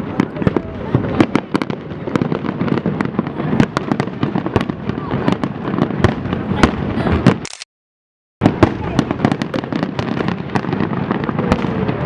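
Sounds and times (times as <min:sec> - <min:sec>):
rumbling firework bursts: 0:00.0 - 0:07.4, 0:08.4 - 0:12.0
fireworks bangs and crackles: 0:00.0 - 0:07.5, 0:08.4 - 0:12.0.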